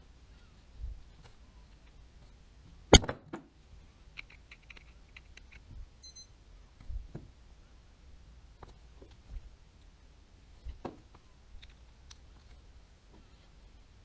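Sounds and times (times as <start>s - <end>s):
light clicks of small parts: 4.0s - 5.7s, 11.1s - 13.3s
brief high ring: 6.0s - 6.3s.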